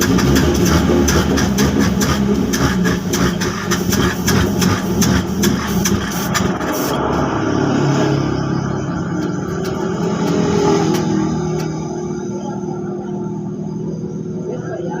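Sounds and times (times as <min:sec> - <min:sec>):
regular engine ticking: 0:00.0 - 0:07.3, 0:08.4 - 0:15.0
engine running: 0:00.0 - 0:15.0.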